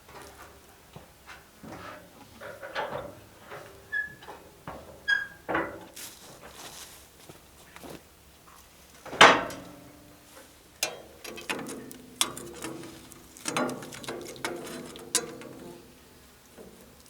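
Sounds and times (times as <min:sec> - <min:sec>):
steel parts clanking: 0:09.2 - 0:17.0.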